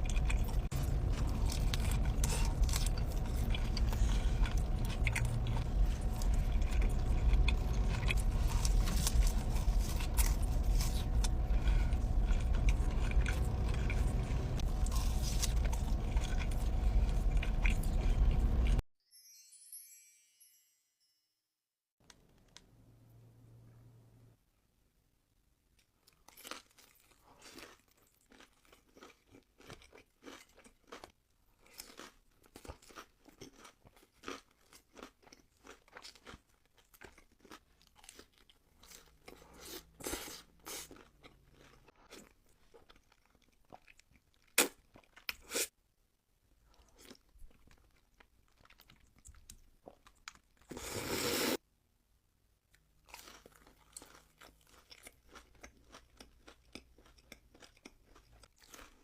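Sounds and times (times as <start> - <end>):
chewing crispy food: 0.0 - 18.8, 25.8 - 45.6, 46.6 - 51.0, 52.7 - 59.0.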